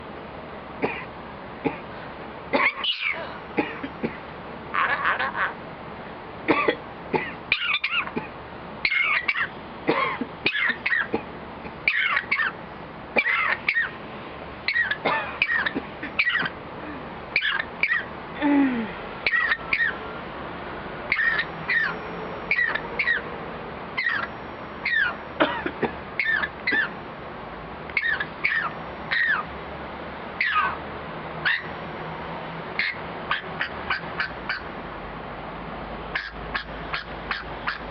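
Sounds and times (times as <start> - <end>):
bird mimicking a cough: 2.6 - 4.2, 9.9 - 11.3, 13.2 - 13.6, 14.8 - 16.5, 25.4 - 26.9.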